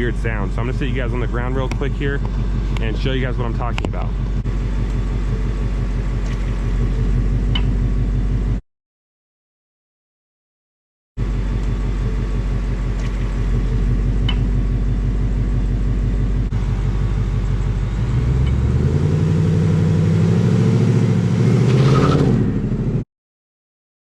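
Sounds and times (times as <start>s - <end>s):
car engine idling and revving: 0.0s - 8.6s, 11.2s - 23.0s.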